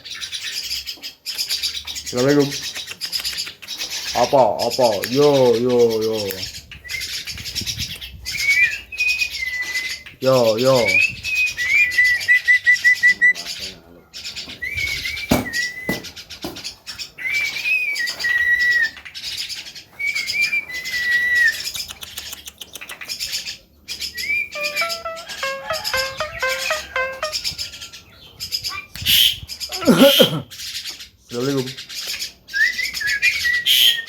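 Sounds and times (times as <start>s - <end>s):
harsh raspy bird chatter: 0.0s - 7.9s
myna whistled calls: 24.1s - 27.5s, 28.7s - 30.4s, 32.6s - 34.0s.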